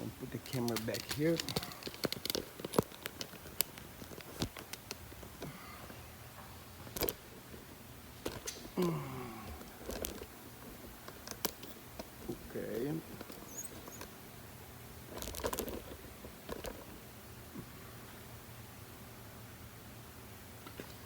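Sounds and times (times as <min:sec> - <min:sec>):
hands handling objects clicking: 0:00.3 - 0:05.6
faint vocal sound: 0:08.7 - 0:09.8.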